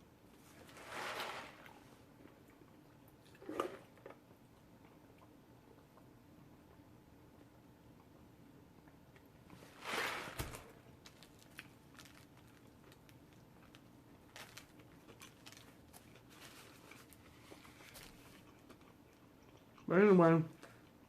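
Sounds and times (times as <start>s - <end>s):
sandwich wrapper rustle: 9.6s - 18.7s
soft chewing clicks: 14.6s - 19.9s.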